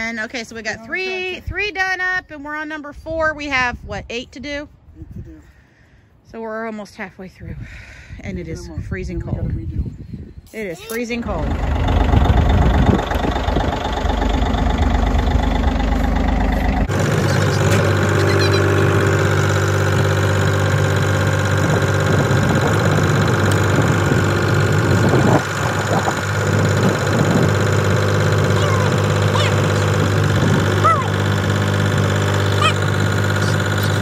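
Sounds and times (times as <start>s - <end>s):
engine running steadily: 11.2s - 34.0s.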